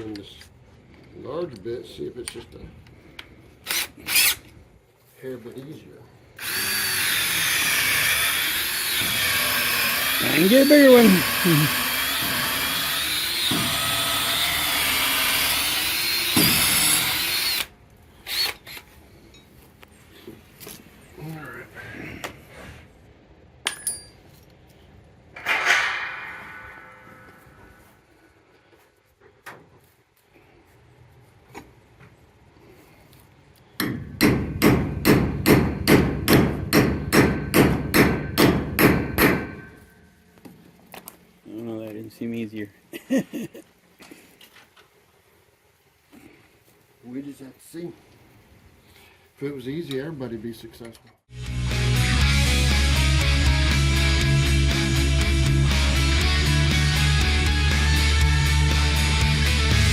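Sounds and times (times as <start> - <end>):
power drill boring into wood: 3.6 - 4.4, 6.4 - 18.8
hammer striking steel bolt: 33.8 - 39.7.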